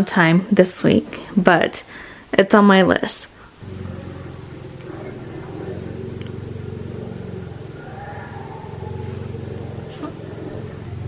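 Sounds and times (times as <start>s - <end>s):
car engine humming: 3.6s - 11.0s
road noise while driving: 3.6s - 11.0s.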